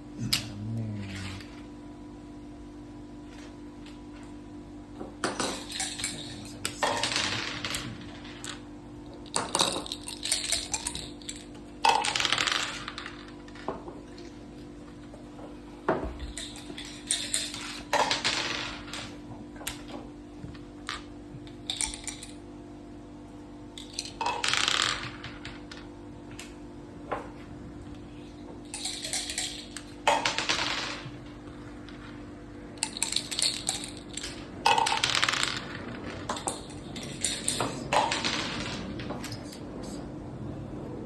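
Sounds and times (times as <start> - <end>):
steady low hum: 0.0 - 41.0
dice clattering: 5.2 - 14.0, 16.2 - 19.9, 20.8 - 22.4, 23.8 - 25.9, 28.7 - 40.0.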